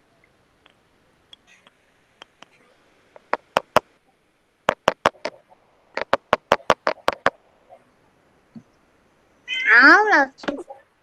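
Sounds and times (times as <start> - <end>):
sharp knocks on hard surface: 3.2 - 3.9, 4.7 - 5.4, 6.0 - 7.4.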